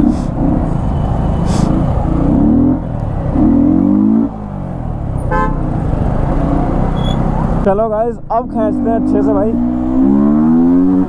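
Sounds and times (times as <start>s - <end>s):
motorcycle engine revving: 0.0s - 7.7s, 8.6s - 11.0s.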